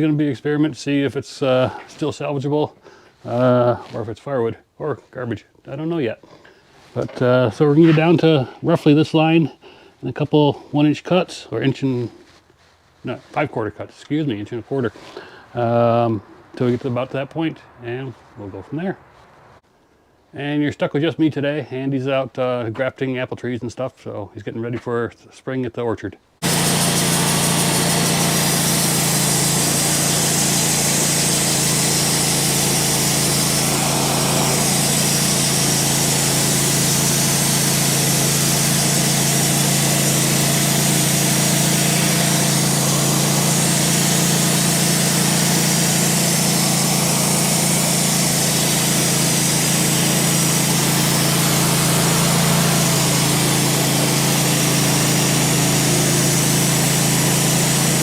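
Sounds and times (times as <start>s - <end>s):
high-pitched saw hiss: 26.4s - 58.0s
sawmill engine drone: 26.4s - 58.0s.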